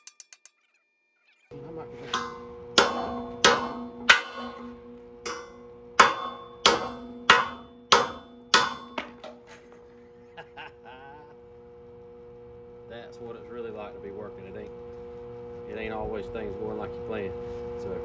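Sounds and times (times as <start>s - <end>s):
hammer striking steel: 1.6s - 9.7s.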